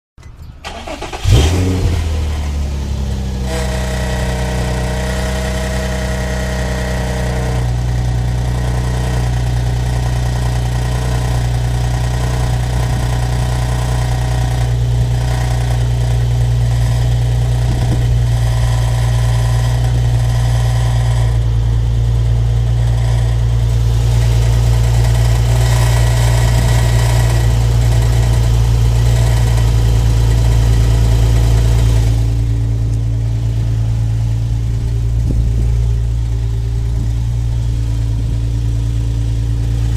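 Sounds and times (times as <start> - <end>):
high-pitched tone over engine: 0.2 - 9.2
car engine starting and idling: 0.2 - 39.9.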